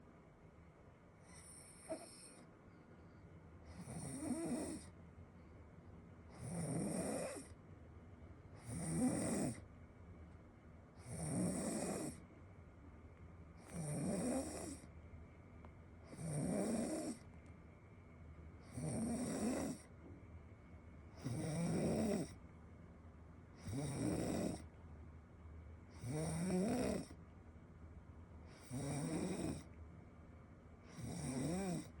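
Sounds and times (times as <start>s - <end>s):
person snoring loudly: 3.7s - 4.8s, 6.4s - 7.5s, 8.6s - 9.6s, 11.0s - 12.2s, 13.7s - 14.8s, 16.1s - 17.2s, 18.7s - 19.8s, 21.2s - 22.3s, 23.6s - 24.6s, 26.0s - 27.1s, 28.6s - 29.6s, 30.9s - 31.9s.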